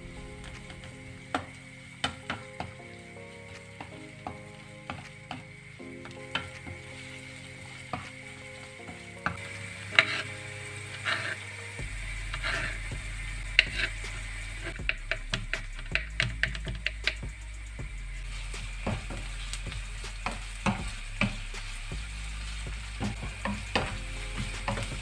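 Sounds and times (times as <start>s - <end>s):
food frying sizzle: 0.0s - 25.0s
utensil scraping a pan: 12.3s - 12.9s, 20.2s - 25.0s.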